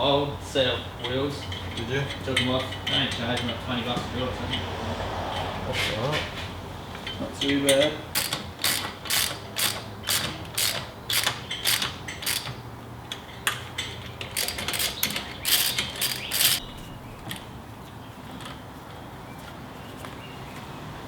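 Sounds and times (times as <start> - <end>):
ratchet wrench clicking: 7.7 - 12.6, 13.5 - 16.6.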